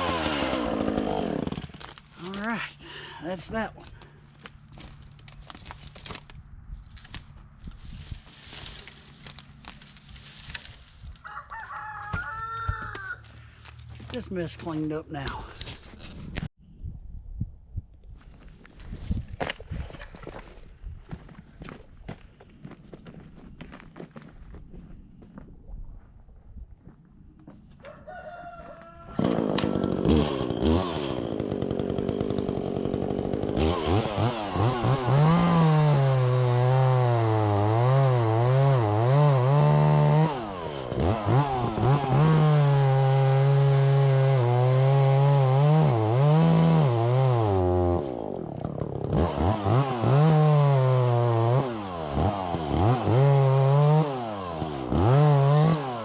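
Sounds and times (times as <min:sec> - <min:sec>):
chainsaw revving: 0:00.0 - 0:03.0, 0:29.2 - 0:56.0.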